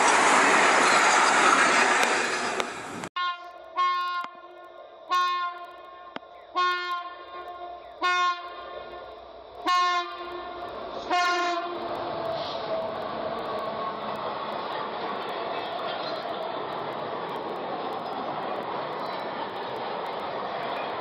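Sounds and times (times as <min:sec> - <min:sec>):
moving train rumble: 0:00.0 - 0:21.0
train horn blasts: 0:03.2 - 0:11.9.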